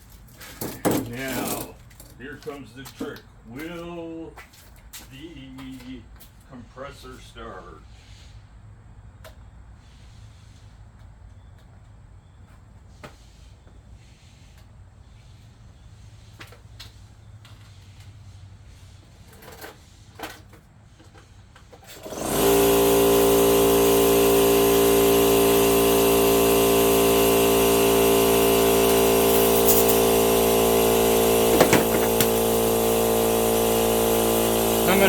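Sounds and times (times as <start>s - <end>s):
air compressor running: 0.5s - 1.8s, 21.1s - 35.0s.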